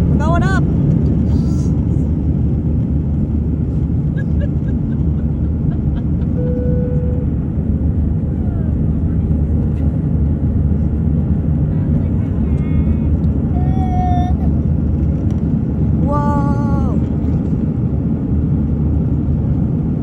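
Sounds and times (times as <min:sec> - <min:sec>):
airplane takeoff rumble: 0:00.0 - 0:20.0.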